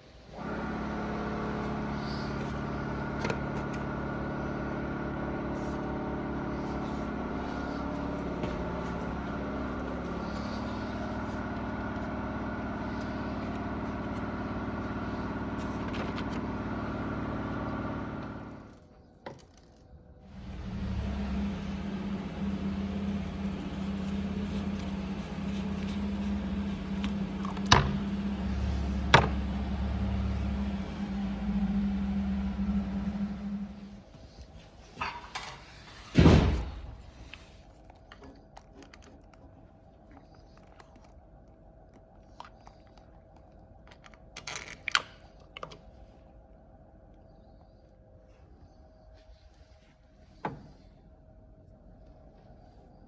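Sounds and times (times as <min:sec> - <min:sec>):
motorcycle engine idling: 0:20.3 - 0:34.4.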